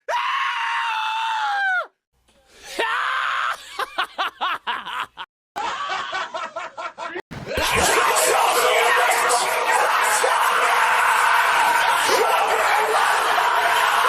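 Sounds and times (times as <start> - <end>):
cartoon high scream: 0.0 - 1.9.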